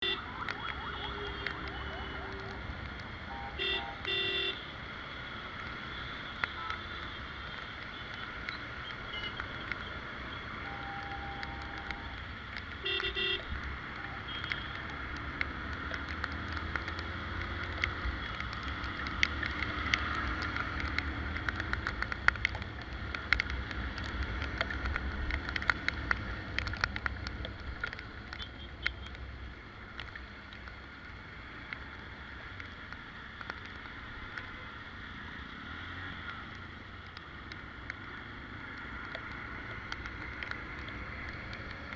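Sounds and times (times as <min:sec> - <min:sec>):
rain: 0:00.0 - 0:41.9
vehicle rumbling: 0:00.0 - 0:41.9.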